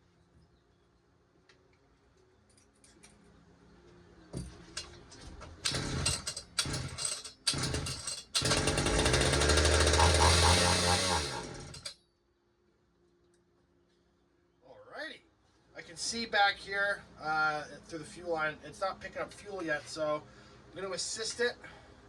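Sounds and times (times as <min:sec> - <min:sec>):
chainsaw engine running: 0:05.6 - 0:11.9
chainsaw pull-start cord: 0:05.6 - 0:11.9.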